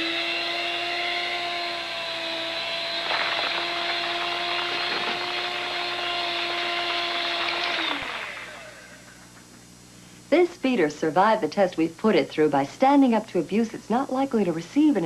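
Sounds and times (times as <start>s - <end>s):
electric mixer churning sand: 0.0s - 9.1s.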